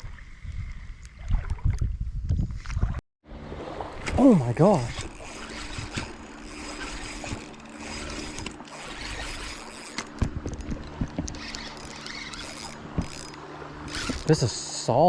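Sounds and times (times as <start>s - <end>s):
water: 0.0s - 15.0s
steady low hum: 3.3s - 15.0s
fishing reel clicks and knocks: 4.9s - 14.3s.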